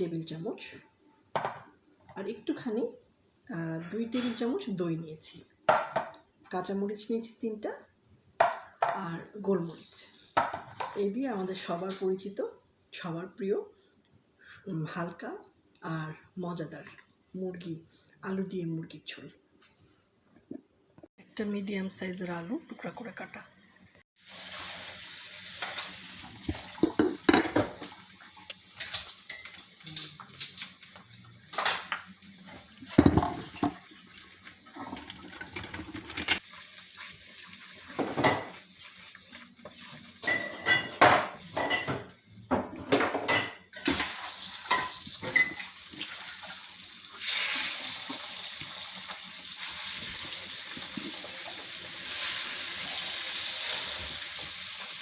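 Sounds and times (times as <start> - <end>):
dishes clinking and knocking: 1.3 - 1.7, 5.7 - 6.2, 26.4 - 27.9, 32.8 - 33.8, 34.8 - 36.4, 38.0 - 38.5, 40.2 - 44.1, 44.7 - 45.7
frying sizzle: 24.2 - 42.6, 43.6 - 55.0.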